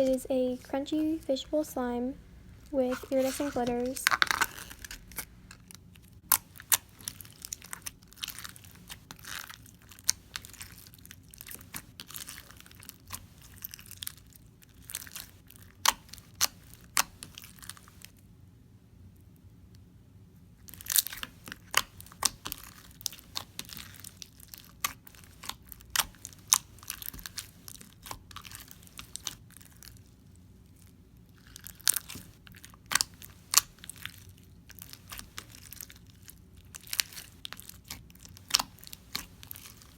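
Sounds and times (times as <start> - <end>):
plastic beads crackling: 2.8 - 5.7.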